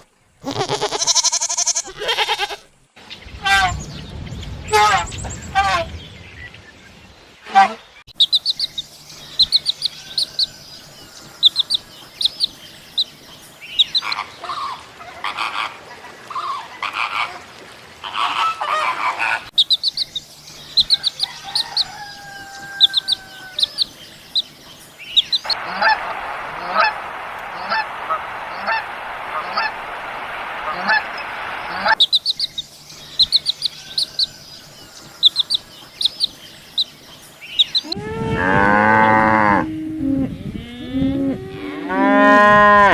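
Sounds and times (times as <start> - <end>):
rapid high bird chirps: 8.1 - 10.6, 22.9 - 37.9
lower bird calls: 19.0 - 38.6
steady hiss: 19.7 - 37.8.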